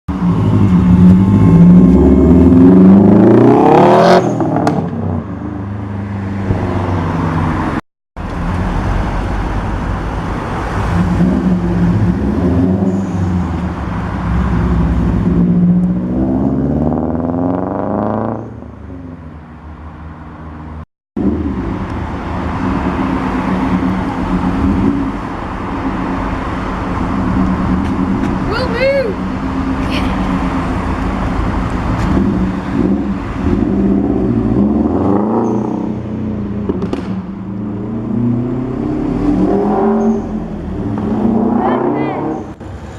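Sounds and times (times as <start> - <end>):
car engine revving: 0.1 - 5.2, 21.2 - 42.7.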